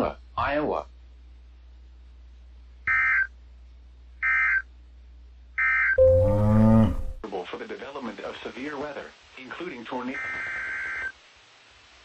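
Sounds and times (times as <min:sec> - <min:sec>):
steady pitched tone: 0:06.0 - 0:07.2.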